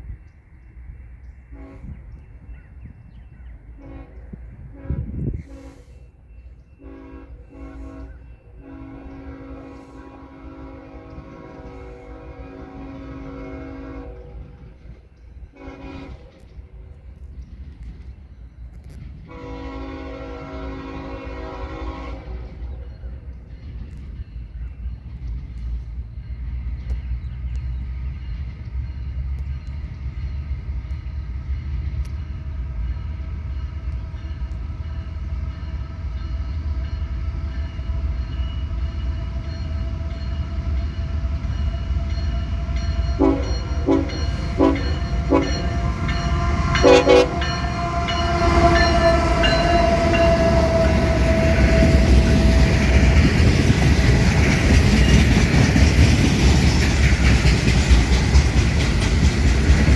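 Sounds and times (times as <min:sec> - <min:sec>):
locomotive horn: 0:01.5 - 0:02.2, 0:03.8 - 0:06.1, 0:06.8 - 0:14.8, 0:15.5 - 0:16.7, 0:19.3 - 0:23.0, 0:40.1 - 0:53.6.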